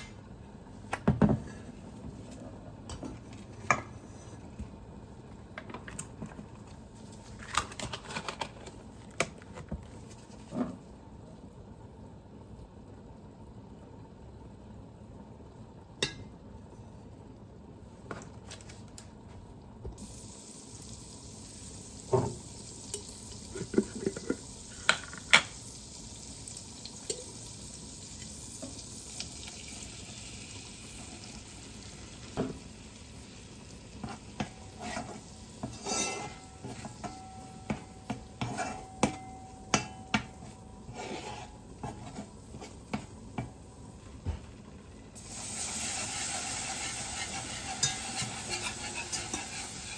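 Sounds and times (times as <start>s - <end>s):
faint steady hiss: 18.6s - 49.9s
utensils and cookware clinking: 34.0s - 43.1s, 46.1s - 49.9s.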